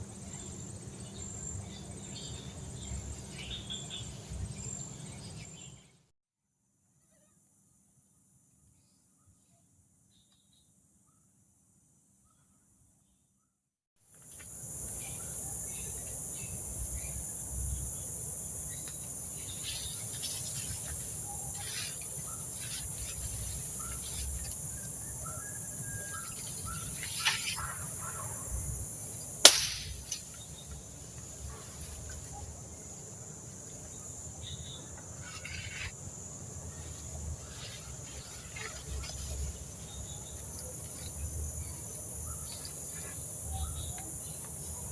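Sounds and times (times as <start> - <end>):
crickets and insects chorus: 0.0 - 5.8, 14.1 - 44.9
sharp snap: 29.4 - 30.4.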